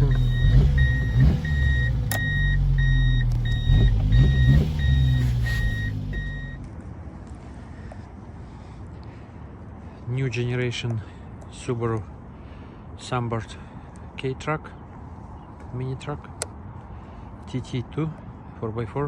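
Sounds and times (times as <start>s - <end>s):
electronic warning beeps: 0.0s - 6.6s
small truck engine idling: 0.0s - 6.7s.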